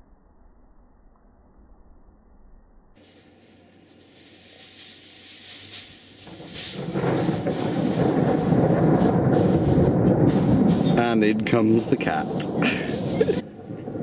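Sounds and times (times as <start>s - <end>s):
rolling thunder: 6.2s - 14.0s.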